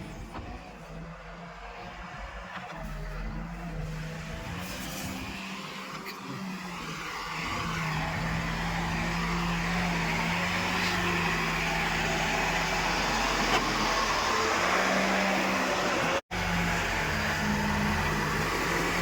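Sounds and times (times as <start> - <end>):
heavy diesel engine running: 6.6 - 19.0.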